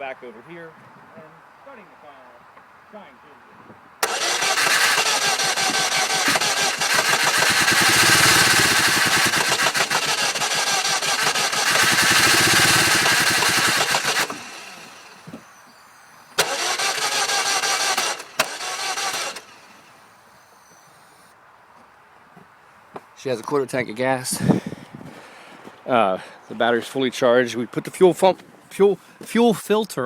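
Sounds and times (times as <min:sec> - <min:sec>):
engine cranking by starter: 0:04.0 - 0:21.3.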